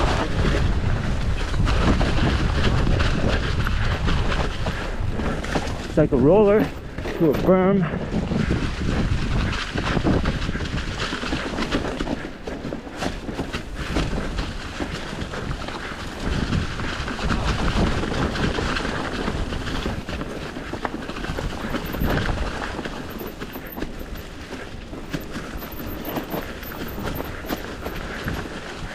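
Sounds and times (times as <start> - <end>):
bike rattling with clicks: 0.0 - 28.9
tyres rolling over dirt: 0.0 - 28.9
wind rumble on microphone: 0.0 - 28.9.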